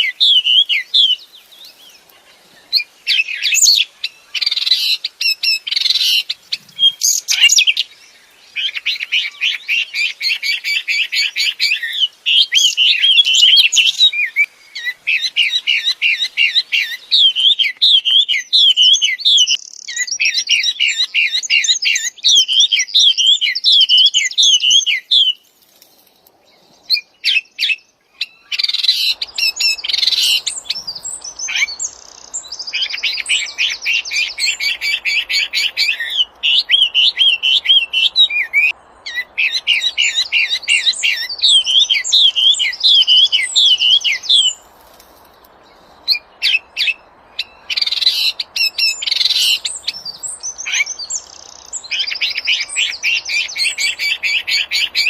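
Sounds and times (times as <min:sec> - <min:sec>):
songbird trilling: 0:26.9 - 0:44.7, 0:46.1 - 0:55.0.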